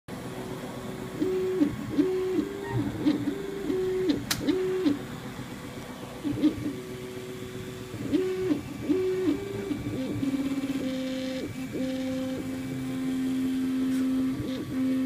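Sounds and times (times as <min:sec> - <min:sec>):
stepper motors whining: 0:00.8 - 0:15.0
sharp click: 0:04.1 - 0:05.0.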